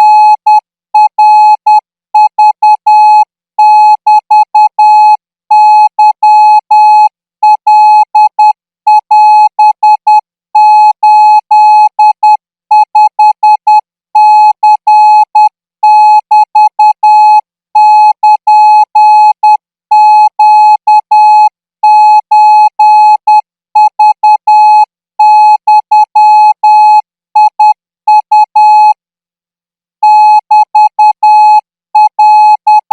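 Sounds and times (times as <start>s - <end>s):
morse code beeps: 30.0s - 32.9s.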